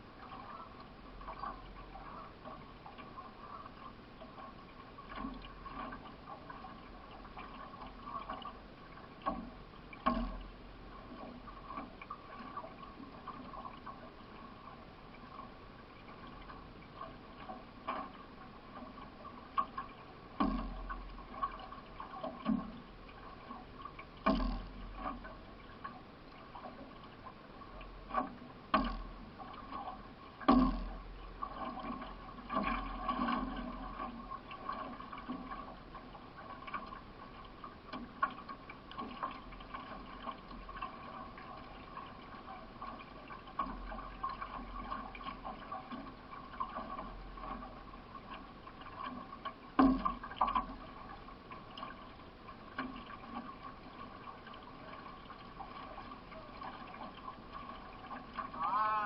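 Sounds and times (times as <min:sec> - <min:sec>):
paddle strokes and water splashing: 0:00.0 - 0:59.0
sharp knocks on canoe: 0:30.5 - 0:31.0.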